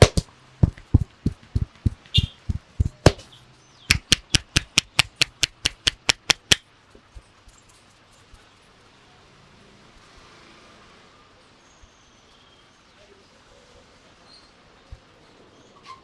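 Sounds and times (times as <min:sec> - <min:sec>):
hands thumping on head: 0:00.0 - 0:03.3, 0:03.9 - 0:06.6
sharp hand claps on head: 0:00.0 - 0:03.3, 0:03.9 - 0:06.6.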